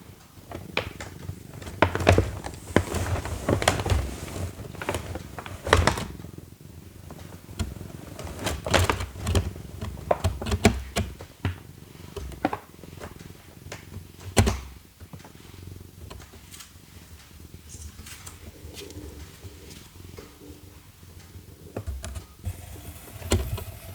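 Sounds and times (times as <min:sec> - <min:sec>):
cat scratching in cardboard box: 0:01.1 - 0:06.4, 0:07.4 - 0:11.0, 0:22.5 - 0:23.9.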